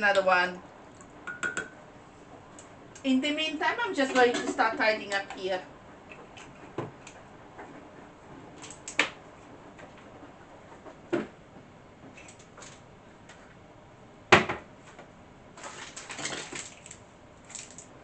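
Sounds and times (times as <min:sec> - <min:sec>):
items knocking on worktop: 0:14.3 - 0:14.7.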